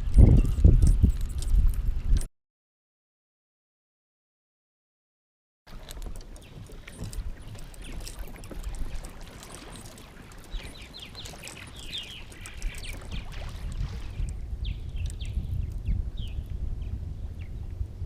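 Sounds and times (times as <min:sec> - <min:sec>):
water against a hull: 0:00.0 - 0:02.3, 0:05.7 - 0:18.0
bird chirps: 0:10.5 - 0:13.4.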